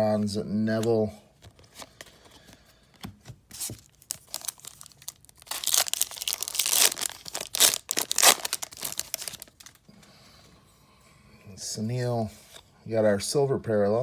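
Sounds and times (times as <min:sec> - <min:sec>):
wrapper crinkling and tearing: 0:03.6 - 0:09.8.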